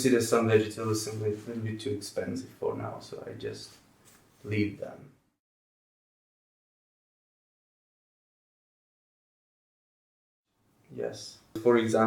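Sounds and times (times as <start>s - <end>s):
person speaking: 0.0s - 3.8s, 4.4s - 5.2s.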